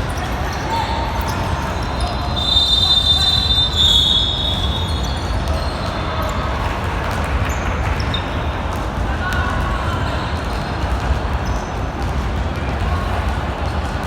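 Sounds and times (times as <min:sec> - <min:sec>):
shoes squealing on gym floor: 0:00.0 - 0:06.7, 0:07.5 - 0:08.8.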